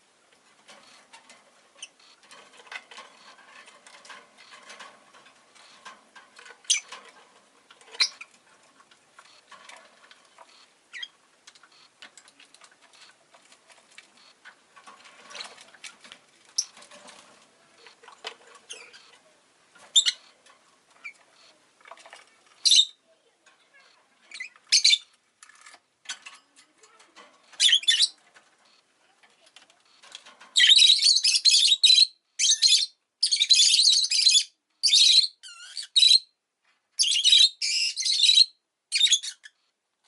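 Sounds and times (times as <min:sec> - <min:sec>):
bird clicking and rustling: 0:00.3 - 0:22.7, 0:23.4 - 0:30.6
bird high chirp: 0:22.6 - 0:23.0, 0:24.3 - 0:25.1, 0:27.6 - 0:28.2, 0:30.6 - 0:36.3, 0:37.0 - 0:39.6.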